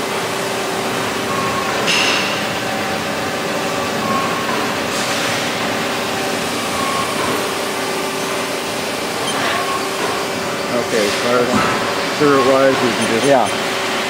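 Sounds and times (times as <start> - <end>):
lathe machine hum: 2.4 - 14.0
machine whining tones: 3.9 - 14.0.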